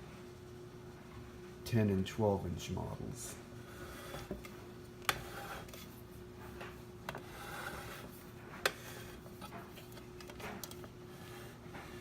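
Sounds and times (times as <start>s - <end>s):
faint steady hum: 0.0s - 12.0s
light rubbing: 3.6s - 4.5s, 5.1s - 6.1s, 7.1s - 12.0s.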